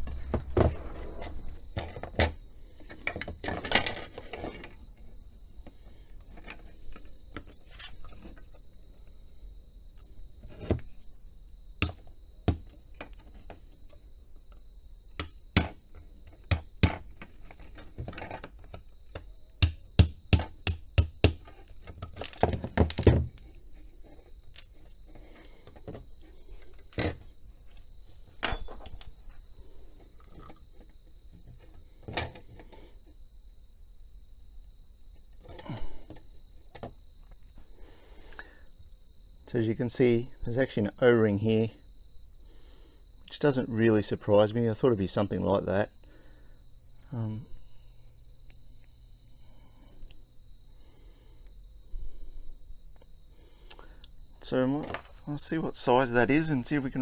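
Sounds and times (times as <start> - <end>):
hammer tapping a punch: 19.6 - 21.4.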